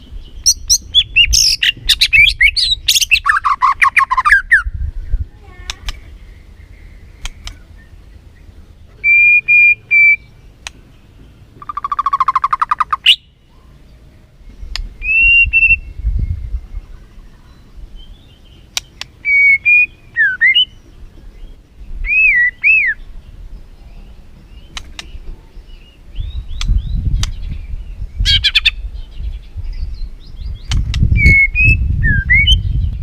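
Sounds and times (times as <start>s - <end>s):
bird clicking notes: 7.2s - 7.6s, 18.7s - 19.2s
bird singing whistled phrases: 9.0s - 10.3s, 15.0s - 16.4s, 19.0s - 20.8s, 22.0s - 23.1s, 26.2s - 32.9s.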